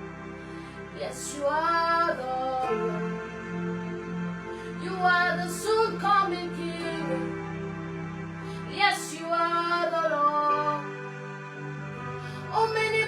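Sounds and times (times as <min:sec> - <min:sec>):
sustained accompaniment chords: 0:00.0 - 0:13.0
woman singing slow melody: 0:00.9 - 0:03.2, 0:04.8 - 0:07.3, 0:08.6 - 0:10.9, 0:12.3 - 0:13.0.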